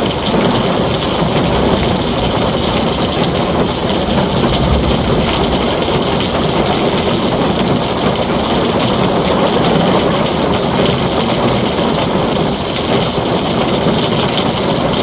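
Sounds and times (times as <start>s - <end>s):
heavy rain on a tin roof: 0.0s - 15.0s.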